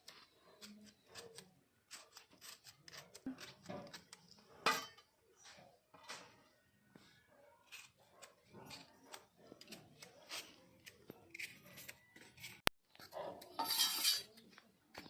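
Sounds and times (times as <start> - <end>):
utensils clicking and scraping dishes: 8.2 - 15.0.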